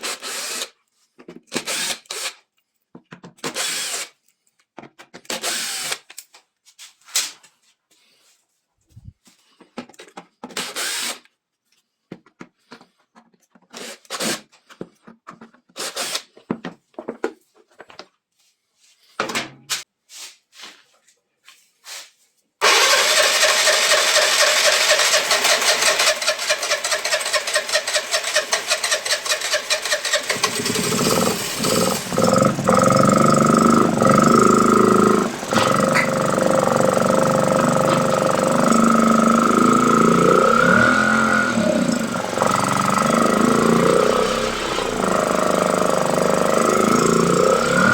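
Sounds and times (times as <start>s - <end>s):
sharp workshop noises: 0.0s - 0.8s, 1.4s - 2.4s, 3.4s - 4.2s, 5.2s - 6.4s, 10.4s - 11.3s, 22.6s - 47.9s
scooter engine running: 22.6s - 47.9s.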